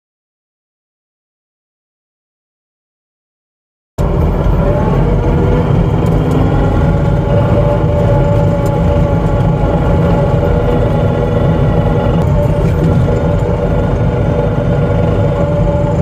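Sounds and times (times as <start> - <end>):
skid steer engine rumbling: 4.0 - 16.0.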